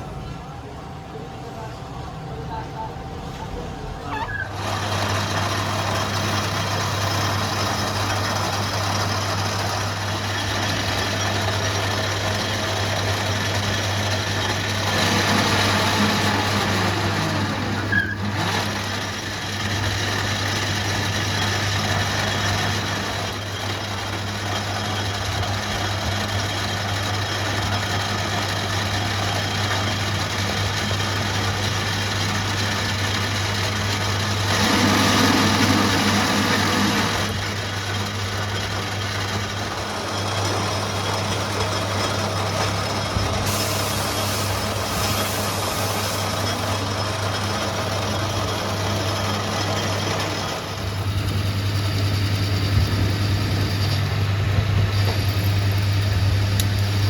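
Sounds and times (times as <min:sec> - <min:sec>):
engine humming: 0:28.9 - 0:57.0.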